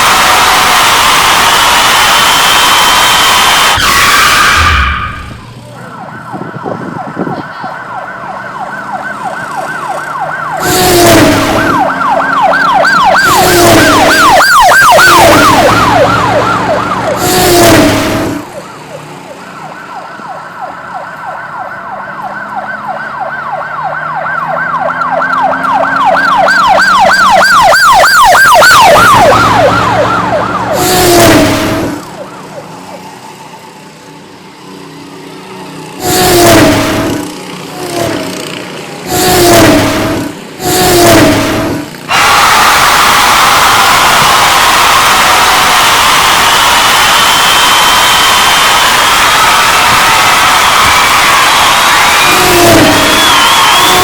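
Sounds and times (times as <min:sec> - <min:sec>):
short loud bursts: 0:00.0 - 0:05.6, 0:10.6 - 0:12.0, 0:12.9 - 0:18.6, 0:28.0 - 0:32.2, 0:36.0 - 0:38.4, 0:39.1 - 0:54.0
siren wailing and warbling: 0:00.0 - 0:19.0, 0:19.6 - 0:32.7, 0:36.0 - 0:54.0.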